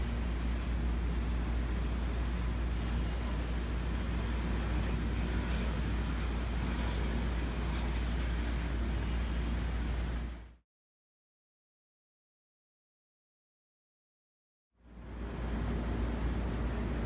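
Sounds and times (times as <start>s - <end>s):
distant urban rumble and hiss: 0.0s - 10.6s, 14.8s - 17.0s.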